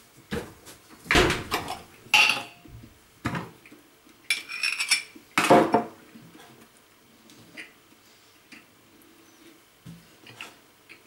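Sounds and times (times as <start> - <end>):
dishes clinking and clattering: 1.5 - 2.6, 4.3 - 6.0.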